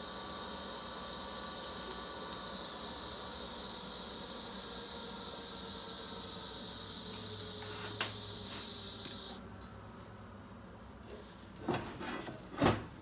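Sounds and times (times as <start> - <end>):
welding arc hiss with whine: 0.0 - 9.4.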